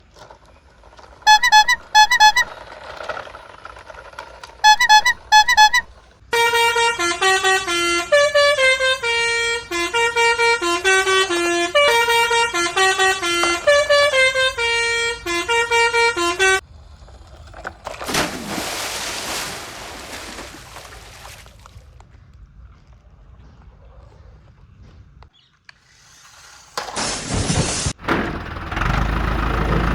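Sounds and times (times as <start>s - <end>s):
musical vehicle horn tune: 1.2s - 16.6s.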